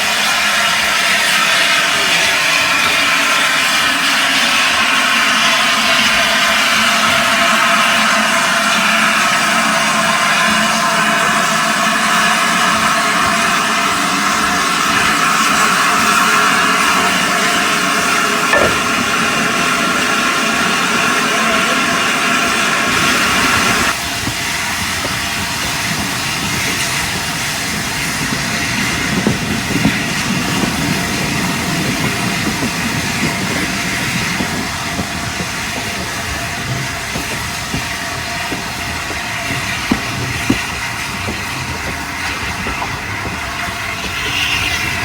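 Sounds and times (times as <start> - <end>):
steam train running: 0.0 - 45.0.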